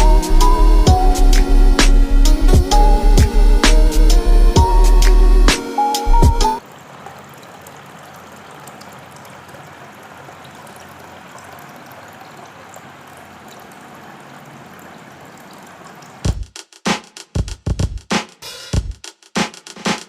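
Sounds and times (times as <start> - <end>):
fountain water trickling: 6.6 - 16.3.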